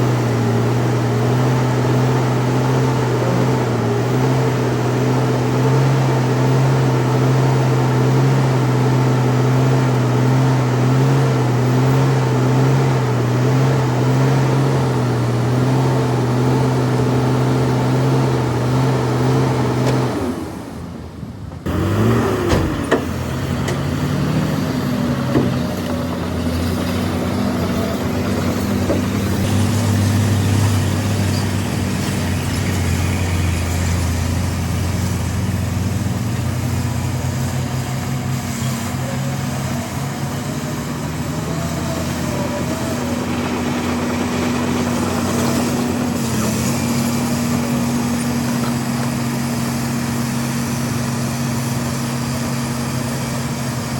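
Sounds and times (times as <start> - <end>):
heavy diesel machinery running: 0.0 - 53.9.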